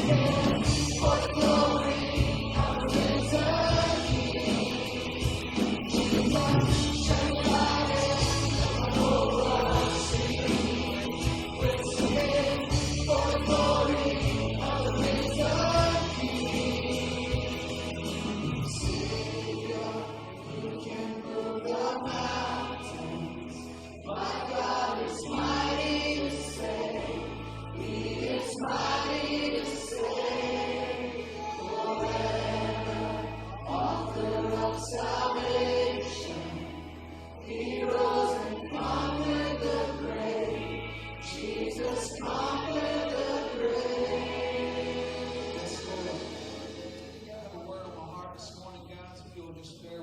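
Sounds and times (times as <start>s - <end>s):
low bass notes: 0.0s - 19.8s
choir singing: 0.0s - 48.8s.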